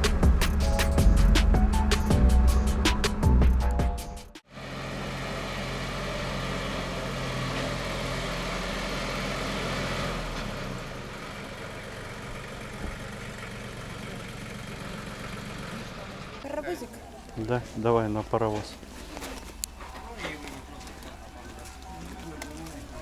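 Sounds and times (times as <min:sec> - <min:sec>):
low engine hum: 0:00.0 - 0:03.8.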